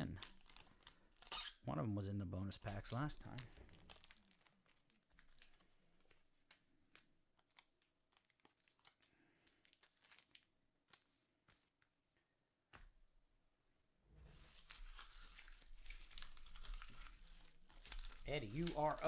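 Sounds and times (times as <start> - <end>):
foil packs crinkling: 0.0 - 1.6, 2.5 - 11.1, 14.3 - 19.0.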